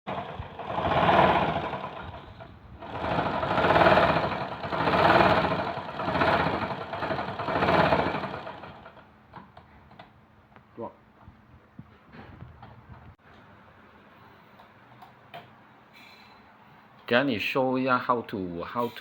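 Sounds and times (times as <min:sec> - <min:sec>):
sewing machine rattling: 0:00.1 - 0:09.0.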